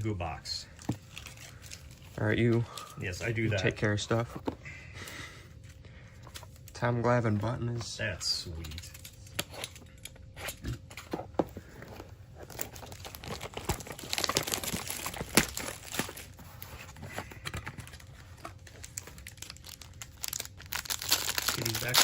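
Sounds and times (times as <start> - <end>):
plastic wrapping crinkling: 0.8 - 3.8, 12.4 - 22.0.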